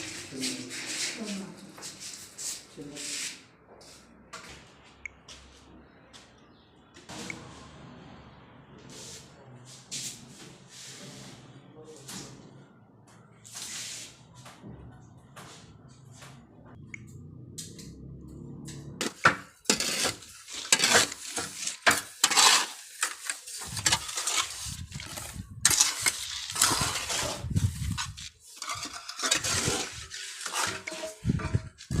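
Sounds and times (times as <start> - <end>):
hard objects clattering and clinking: 28.0 - 32.0.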